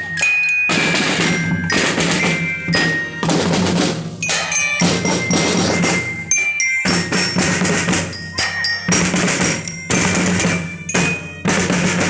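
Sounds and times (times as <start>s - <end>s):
snare and bass drums marching: 0.0s - 12.0s.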